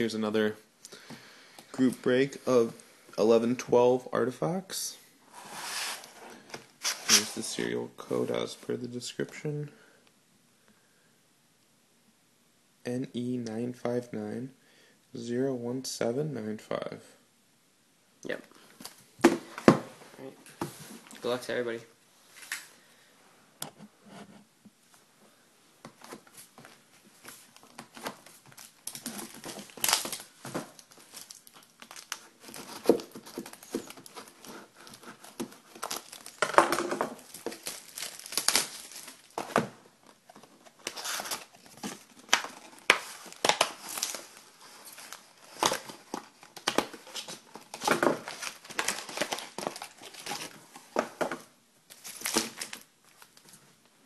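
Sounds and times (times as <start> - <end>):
plastic packaging crinkling: 27.5 - 39.6, 40.7 - 50.6, 51.9 - 53.5
plastic tearing: 28.5 - 36.6, 37.2 - 39.4.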